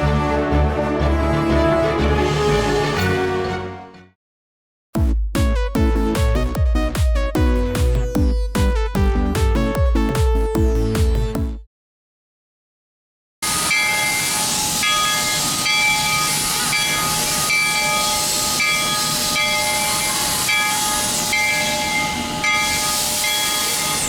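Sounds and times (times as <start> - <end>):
steam locomotive hissing steam: 13.5 - 24.0.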